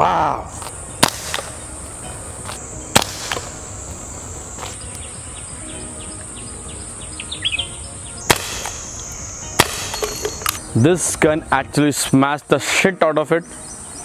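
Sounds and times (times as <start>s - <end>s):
high insect buzz: 0.4s - 12.5s
air pistol shots: 1.0s - 1.6s, 2.9s - 3.6s, 8.3s - 8.9s, 9.6s - 10.6s
bird chirps: 3.6s - 11.7s, 13.3s - 14.0s.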